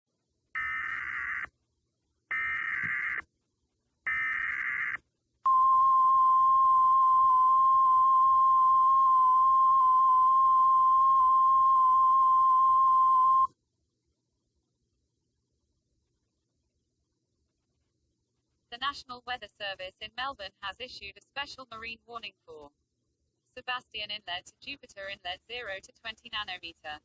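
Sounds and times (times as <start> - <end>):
loud steady attention tone: 4.1 - 13.5.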